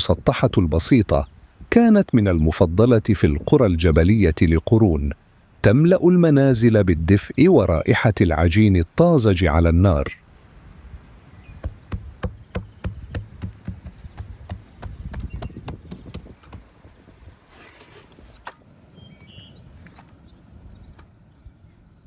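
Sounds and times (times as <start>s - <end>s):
rolling pin knocking on board: 11.6s - 16.7s.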